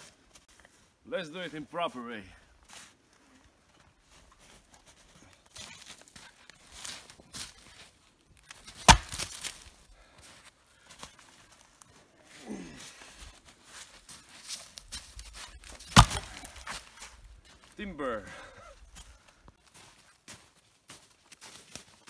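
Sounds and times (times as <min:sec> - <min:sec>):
wood knocking and crackling: 0:08.4 - 0:09.7, 0:15.0 - 0:17.1
axe chopping tree trunk: 0:08.5 - 0:09.7, 0:15.6 - 0:16.9.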